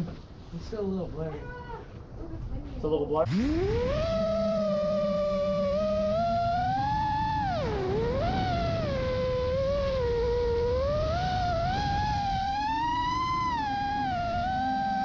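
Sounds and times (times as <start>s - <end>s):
rushing of prop wash and wind: 3.2s - 15.0s
drone motors whining: 3.3s - 15.0s.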